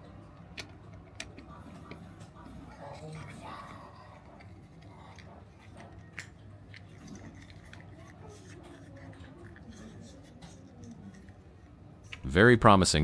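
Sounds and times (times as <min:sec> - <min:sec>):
plastic toy parts clicking: 0:00.1 - 0:12.2.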